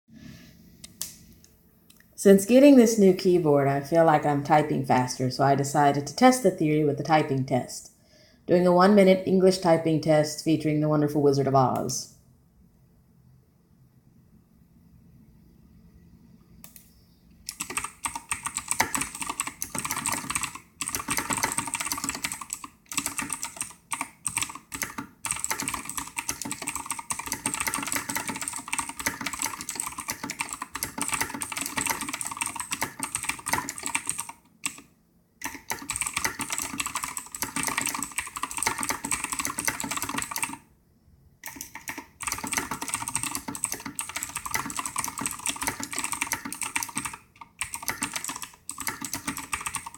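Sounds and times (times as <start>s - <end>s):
mechanical keyboard typing: 17.5s - 40.6s, 41.4s - 49.9s.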